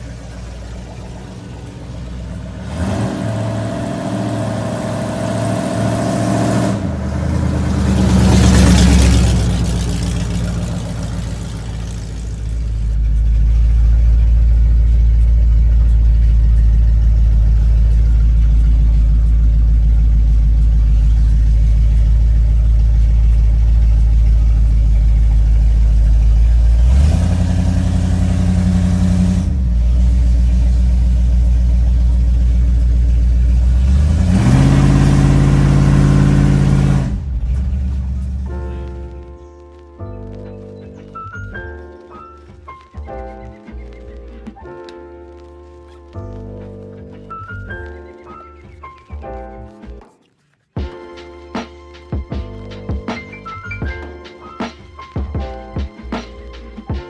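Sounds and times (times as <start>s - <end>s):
engine revving and droning: 0.0s - 39.4s.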